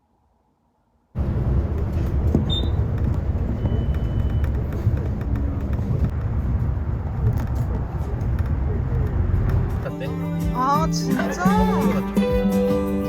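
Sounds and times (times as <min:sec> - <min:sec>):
vehicle rumbling: 0:01.2 - 0:12.0.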